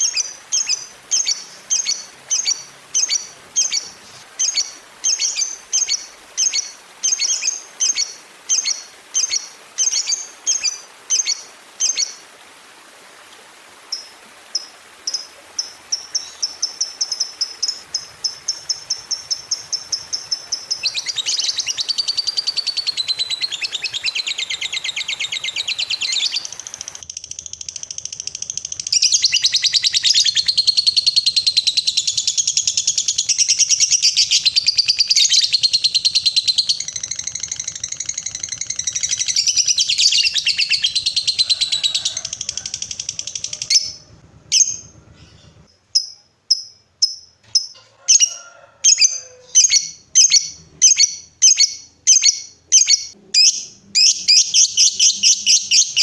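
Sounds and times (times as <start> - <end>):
bird chattering trill: 14.6 - 48.3, 48.9 - 56.0.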